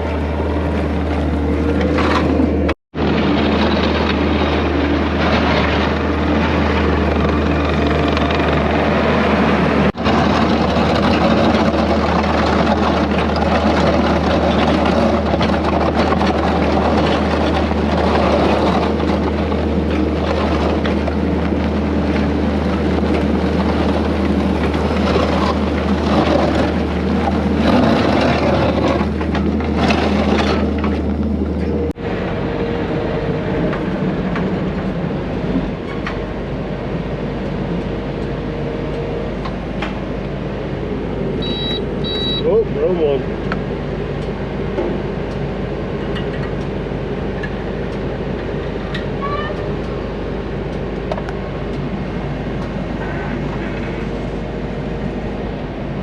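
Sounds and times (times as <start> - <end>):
loader diesel engine droning: 0.0 - 56.0.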